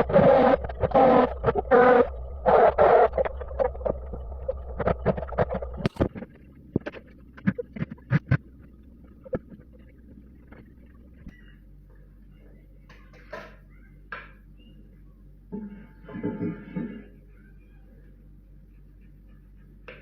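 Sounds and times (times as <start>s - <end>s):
low steady hum: 0.0s - 20.0s.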